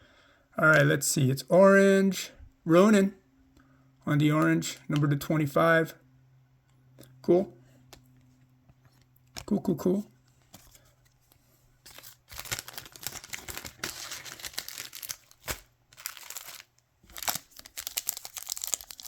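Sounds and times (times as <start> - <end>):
foil wrapper crinkling and tearing: 11.8 - 19.0.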